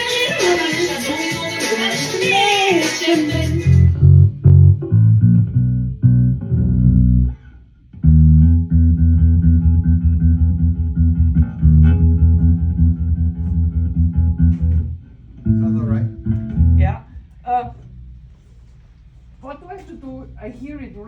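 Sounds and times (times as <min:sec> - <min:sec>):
electric bass guitar notes: 0:02.3 - 0:18.5.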